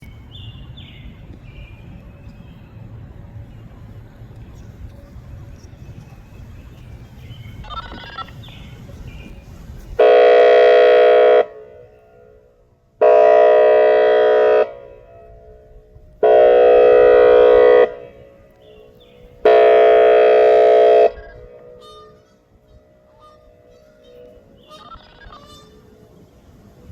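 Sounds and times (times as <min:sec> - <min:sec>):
siren airhorn blasts: 0:10.0 - 0:18.6, 0:19.4 - 0:26.0.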